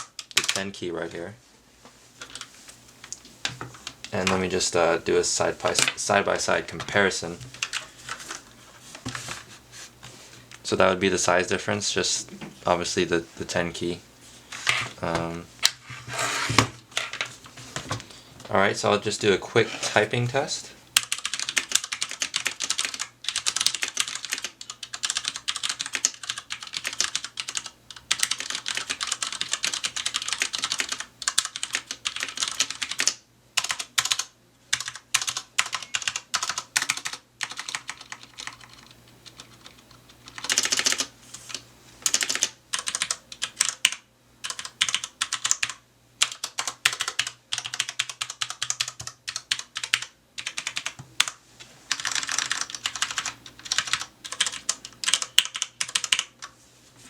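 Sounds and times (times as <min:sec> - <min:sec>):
mechanical keyboard typing: 0:00.0 - 0:00.6, 0:07.5 - 0:08.4, 0:21.0 - 0:56.4.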